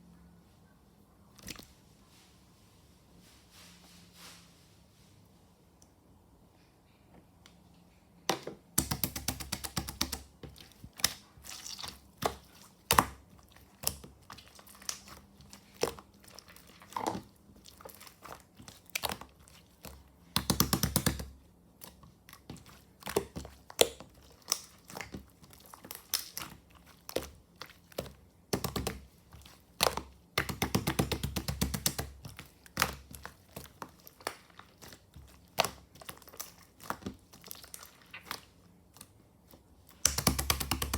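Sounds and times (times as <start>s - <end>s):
slime ball crinkling and crackling: 8.8s - 40.9s.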